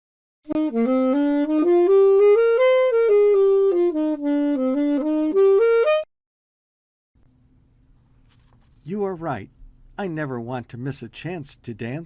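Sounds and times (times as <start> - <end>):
solo saxophone melody: 0.5 - 6.1.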